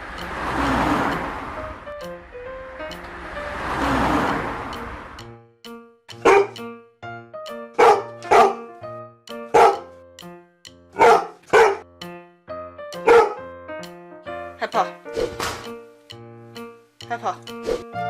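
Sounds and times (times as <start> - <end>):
background music: 0.0 - 18.0
dog barking: 6.2 - 6.6, 7.8 - 8.7, 9.5 - 9.9, 11.0 - 11.9, 13.0 - 13.4.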